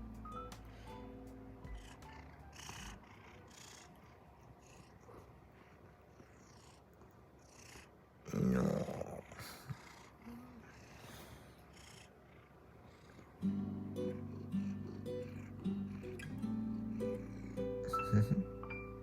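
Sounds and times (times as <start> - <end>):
cat purring: 1.7 - 18.6.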